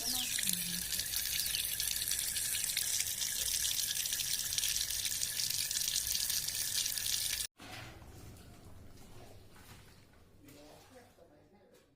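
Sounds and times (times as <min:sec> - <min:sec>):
water running through filter: 0:00.0 - 0:07.5.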